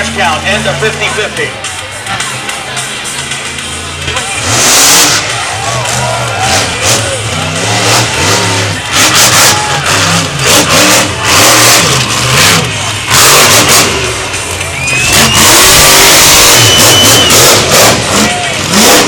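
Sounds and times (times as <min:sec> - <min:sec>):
truck engine revving hard: 0:00.0 - 0:19.0.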